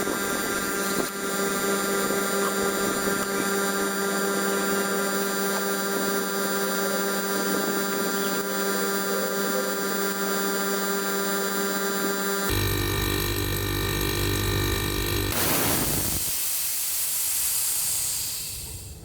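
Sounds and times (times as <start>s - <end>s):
refrigerator compressor hum: 12.5s - 16.4s.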